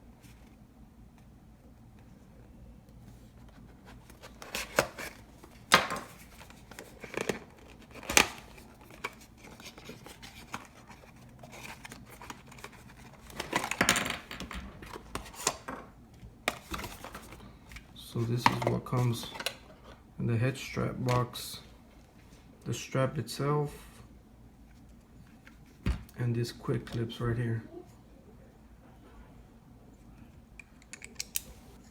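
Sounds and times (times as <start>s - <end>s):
packaging tearing and rustling: 4.1s - 13.9s.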